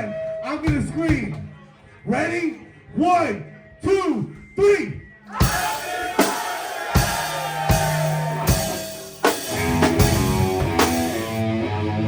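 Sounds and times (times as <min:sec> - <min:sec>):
drum kit hits with cymbals: 0:05.4 - 0:11.5
bass guitar: 0:07.0 - 0:12.0
electric guitar chords: 0:07.8 - 0:12.0.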